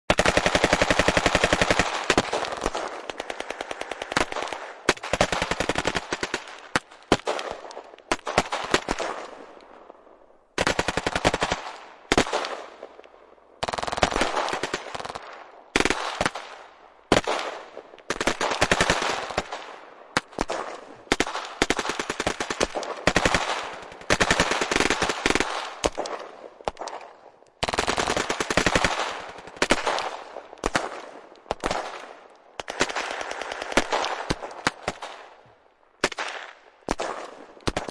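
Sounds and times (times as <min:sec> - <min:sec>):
automatic gunfire bursts: 0:00.1 - 0:09.3, 0:13.6 - 0:16.5, 0:17.1 - 0:26.9, 0:27.6 - 0:32.0.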